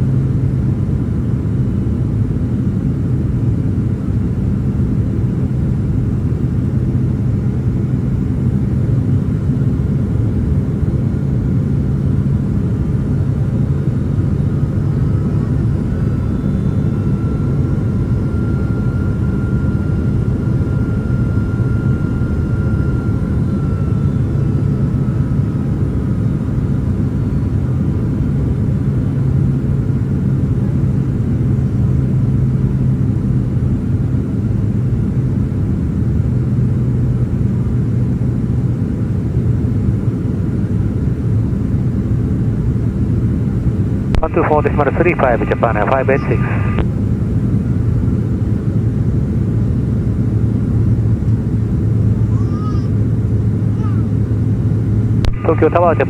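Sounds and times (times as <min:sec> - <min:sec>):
airliner cabin engine rumble: 0:00.0 - 0:56.0
faint high whine: 0:14.4 - 0:27.4, 0:44.1 - 0:47.0, 0:55.2 - 0:56.0.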